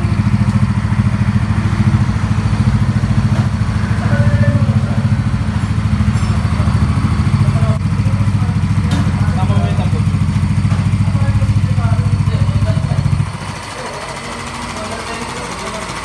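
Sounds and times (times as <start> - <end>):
motorcycle engine idling: 0.0 - 16.0.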